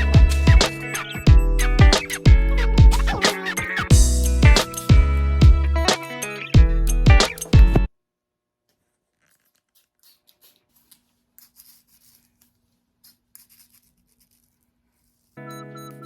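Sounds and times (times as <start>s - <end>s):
background music: 0.0s - 7.9s, 15.4s - 16.0s
hands scratching and clicking: 8.7s - 15.4s.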